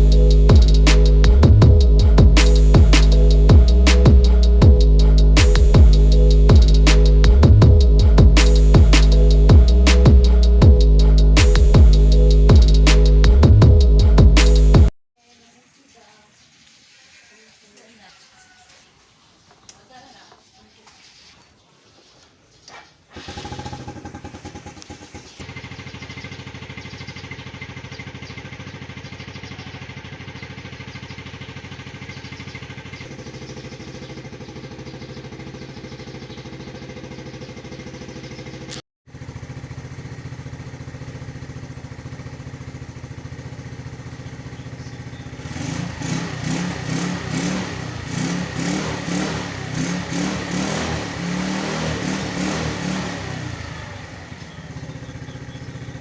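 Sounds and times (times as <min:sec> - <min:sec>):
scooter engine idling: 0:00.0 - 0:14.3, 0:23.1 - 0:56.0
engine revving in short blips: 0:23.1 - 0:38.8, 0:41.4 - 0:56.0.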